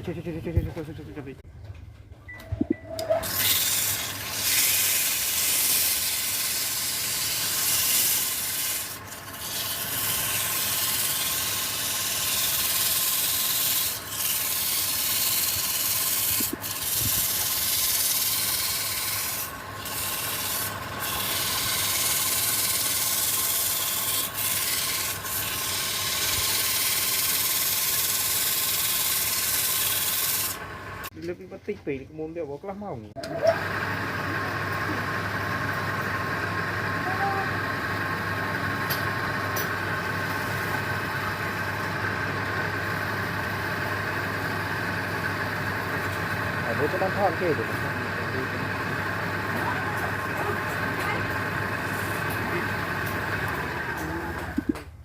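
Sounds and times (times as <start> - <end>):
sanding: 3.2 - 30.6.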